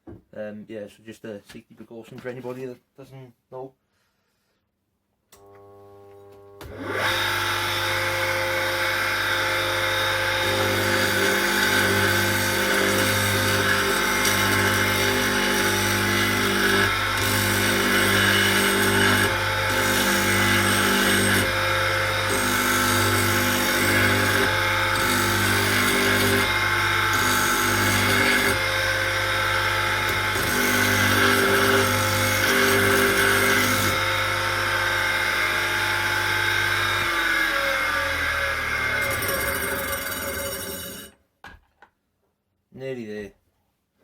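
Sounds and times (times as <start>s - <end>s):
electric motor humming: 5.4s - 40.2s
file scraping on wood: 30.1s - 34.0s.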